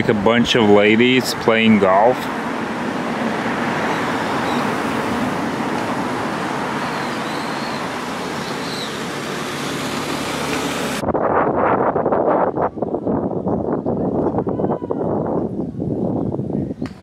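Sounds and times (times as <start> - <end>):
road traffic noise: 0.0 - 11.0
faint bird chirps: 8.4 - 9.0.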